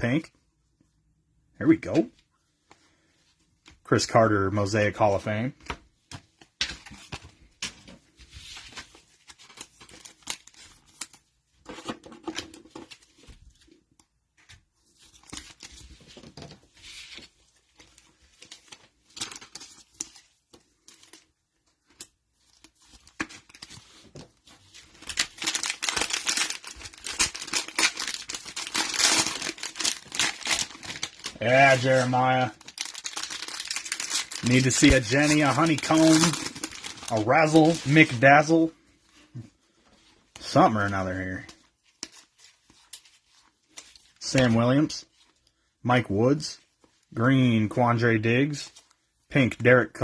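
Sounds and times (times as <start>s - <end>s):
cellophane wrappers crinkling: 17.7s - 38.6s.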